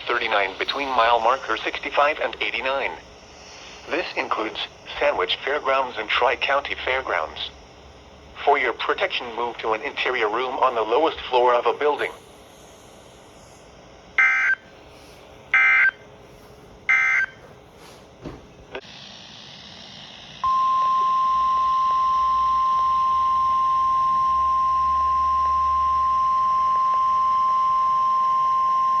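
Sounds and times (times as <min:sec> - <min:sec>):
steady warning alarm tone: 0:00.0 - 0:17.8
digital data tones: 0:14.2 - 0:14.6, 0:15.6 - 0:16.0, 0:16.9 - 0:17.4.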